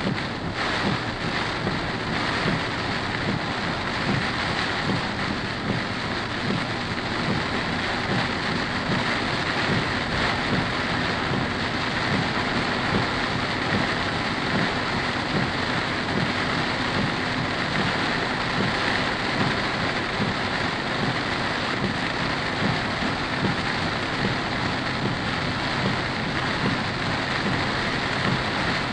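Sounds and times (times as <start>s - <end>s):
heavy rain on a car: 0.0s - 28.9s.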